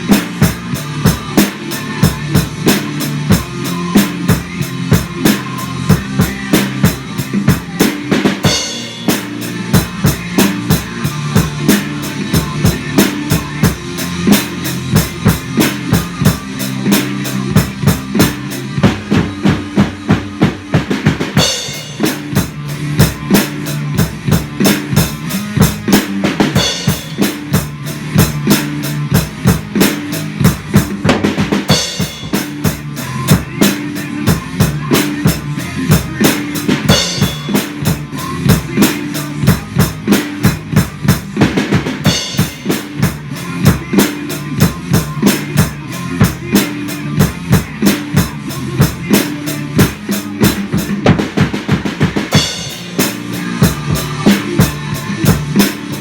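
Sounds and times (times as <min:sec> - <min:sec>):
drum kit rock beat: 0:00.0 - 0:56.0
rock track low notes: 0:00.0 - 0:56.0.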